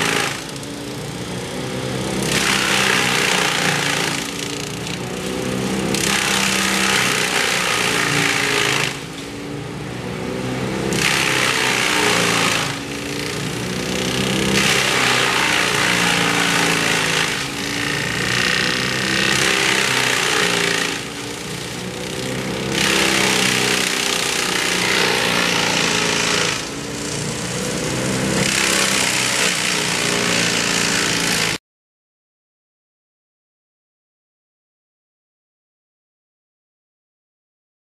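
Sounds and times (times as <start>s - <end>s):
grinding of wood: 2.0s - 9.1s, 10.9s - 31.6s.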